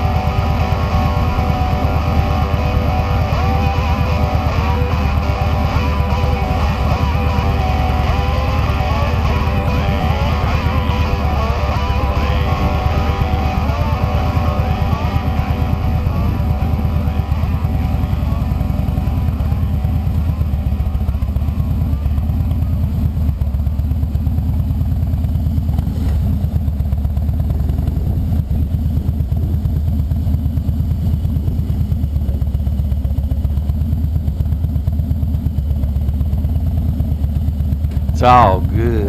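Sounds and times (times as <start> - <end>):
motorcycle engine running: 0.0 - 39.0.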